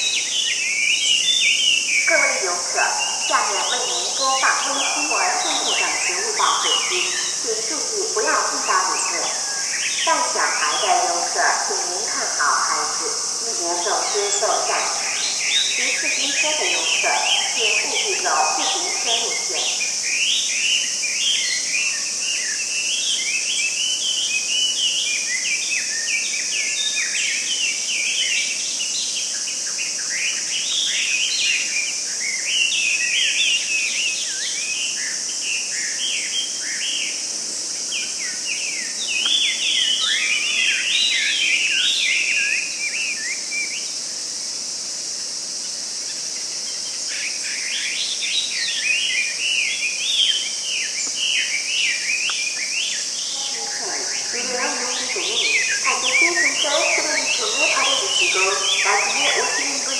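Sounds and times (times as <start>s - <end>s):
birds chattering: 0.0s - 23.0s, 46.8s - 59.9s
insect drone: 0.0s - 59.9s.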